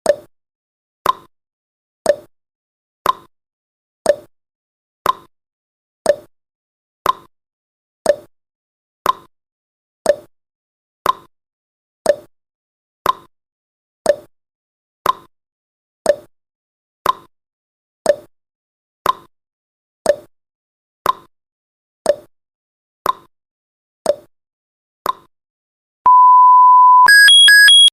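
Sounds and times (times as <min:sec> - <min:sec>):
steady electronic beep: 0:26.1 - 0:27.9.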